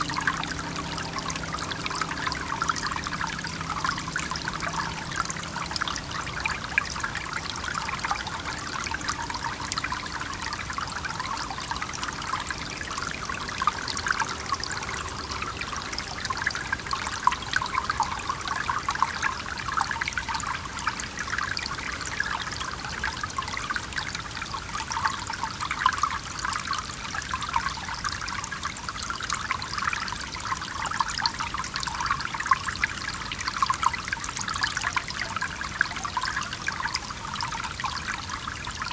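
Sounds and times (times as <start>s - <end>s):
small stream trickling: 0.0s - 38.9s.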